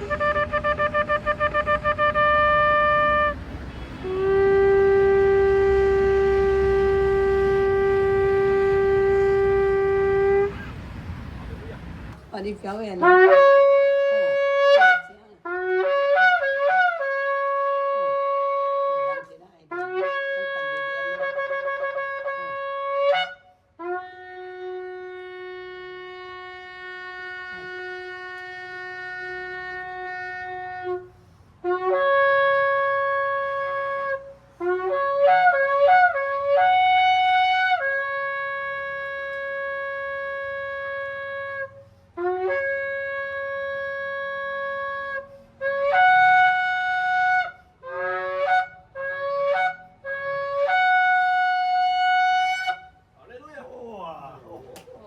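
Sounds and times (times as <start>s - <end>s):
ram's horn blasts: 0.0s - 54.9s.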